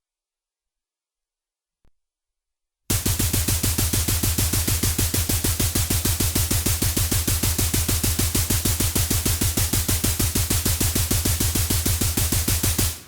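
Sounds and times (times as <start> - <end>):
machine gun automatic fire: 2.9 - 13.0.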